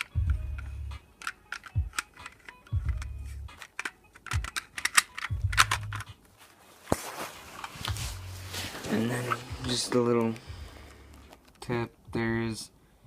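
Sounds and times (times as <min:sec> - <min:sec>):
background music with deep bass: 0:00.0 - 0:06.2, 0:07.7 - 0:11.3
plastic clicks and rattles: 0:00.0 - 0:06.2.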